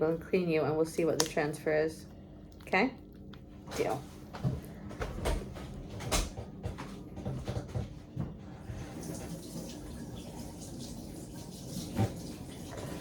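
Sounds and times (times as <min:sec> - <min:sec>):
tap water running into sink: 0:08.8 - 0:13.0.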